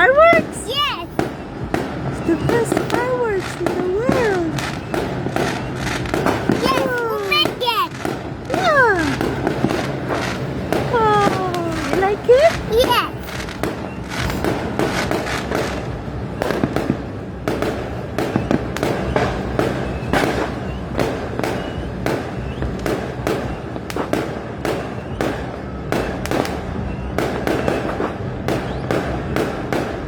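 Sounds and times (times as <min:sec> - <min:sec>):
steady low rumble: 0:00.0 - 0:20.2
fireworks bangs and crackles: 0:00.0 - 0:30.0.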